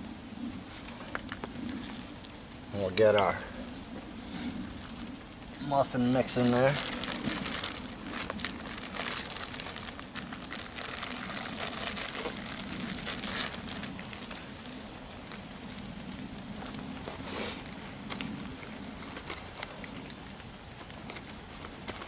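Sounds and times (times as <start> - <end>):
campfire crackling and sizzling: 0.0 - 22.0.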